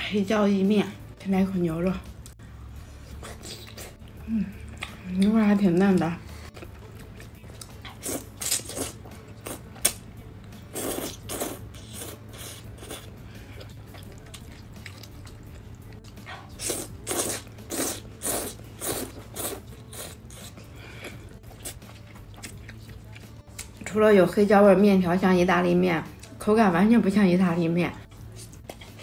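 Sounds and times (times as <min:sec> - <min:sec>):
wet chewing: 0:10.6 - 0:23.8, 0:28.1 - 0:29.0.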